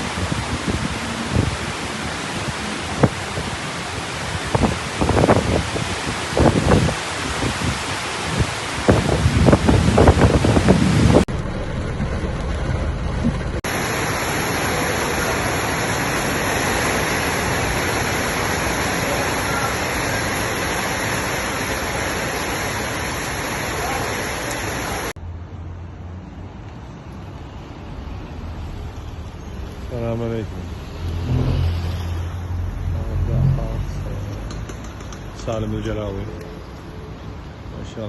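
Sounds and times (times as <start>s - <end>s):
heavy rain hiss: 0.0s - 11.3s, 13.6s - 25.2s
wind gusts buffeting microphone: 0.0s - 11.3s
low hum: 11.2s - 14.9s.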